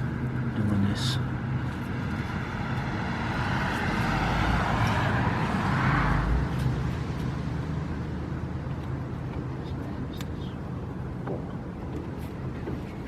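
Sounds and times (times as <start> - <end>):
road vehicle passing: 0.0 - 13.0.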